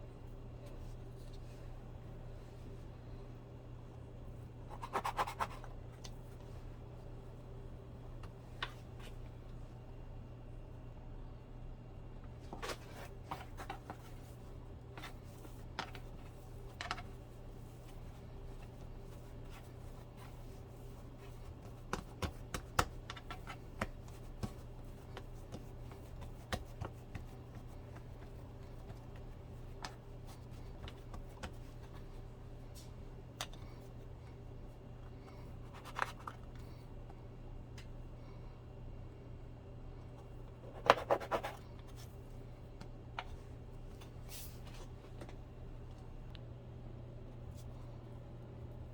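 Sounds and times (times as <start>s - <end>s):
steady low hum: 0.0s - 48.9s
utensils tapping and rustling dough: 17.8s - 33.7s.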